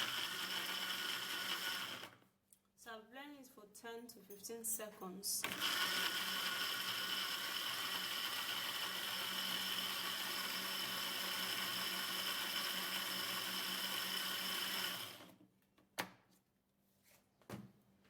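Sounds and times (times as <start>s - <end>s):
electric blender running: 0.0s - 2.2s, 5.4s - 15.4s.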